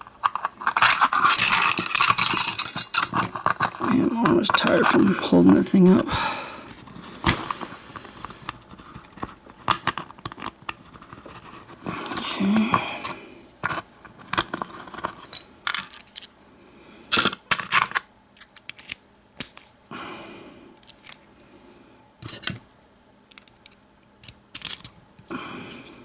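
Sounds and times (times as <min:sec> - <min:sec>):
metal parts scraping: 0:00.0 - 0:06.0
padlock parts clicking and rattling: 0:00.2 - 0:06.0, 0:17.2 - 0:19.7, 0:20.8 - 0:21.2, 0:23.3 - 0:25.0.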